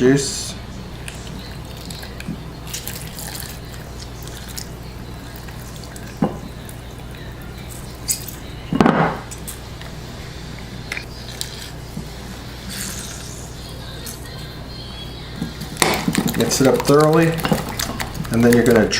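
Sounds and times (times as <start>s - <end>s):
steady low hum: 0.0s - 18.9s
juice dripping into a bowl: 0.9s - 8.6s, 15.4s - 18.9s.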